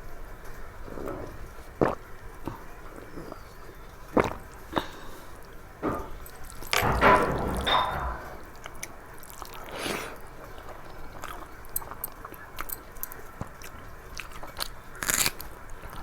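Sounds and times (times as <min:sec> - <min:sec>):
wet chewing smacks: 0:01.0 - 0:05.5, 0:09.2 - 0:16.0.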